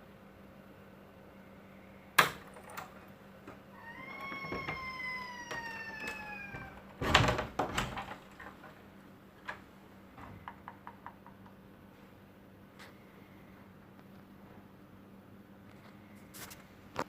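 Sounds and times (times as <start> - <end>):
cat yowling: 3.7 - 6.9.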